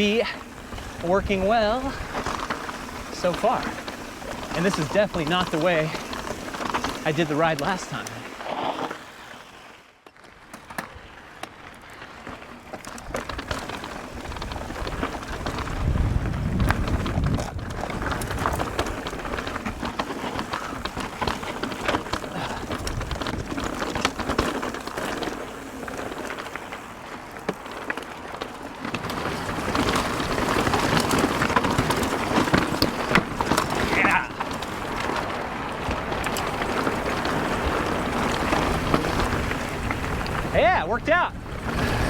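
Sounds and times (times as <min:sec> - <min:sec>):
bike tyres crunching on gravel: 0:00.0 - 0:42.0
wind buffeting microphone: 0:14.1 - 0:19.9, 0:29.2 - 0:42.0.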